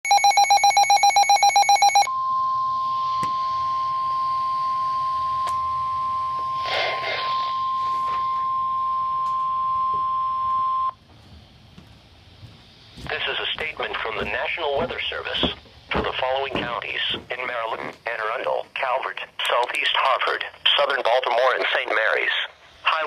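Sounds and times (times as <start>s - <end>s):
steady high alarm tone: 0.0s - 11.0s
faint radio static: 13.0s - 23.0s.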